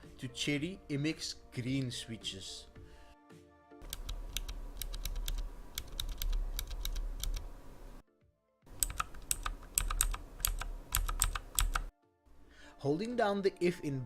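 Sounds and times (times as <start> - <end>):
mechanical keyboard clicks: 3.8 - 7.5, 8.7 - 11.9.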